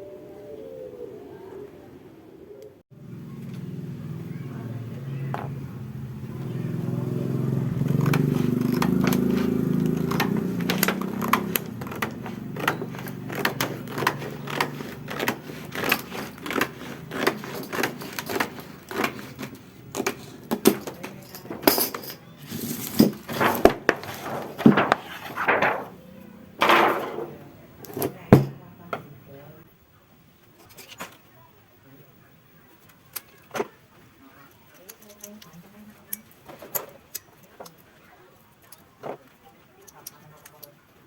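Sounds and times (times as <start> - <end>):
clicks and clatters of small parts: 7.8 - 26.0, 30.5 - 31.2, 32.8 - 33.8, 34.4 - 40.8.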